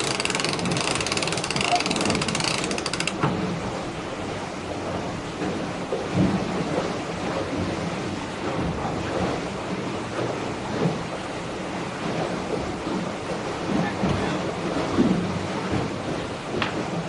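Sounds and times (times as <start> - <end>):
winch ratchet clicking: 0.0 - 3.3
water rushing past hull: 0.0 - 17.0.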